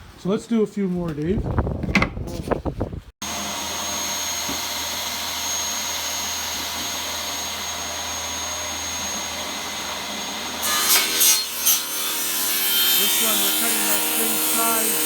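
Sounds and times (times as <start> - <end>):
table saw whining: 3.2 - 15.0.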